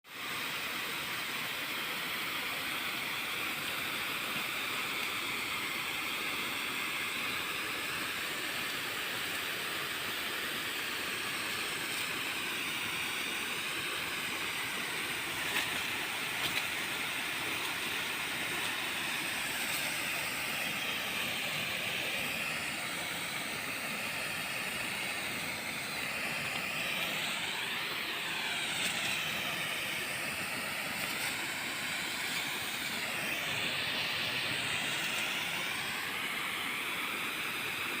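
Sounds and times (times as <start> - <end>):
heavy rain in strong wind: 10.9 - 38.0.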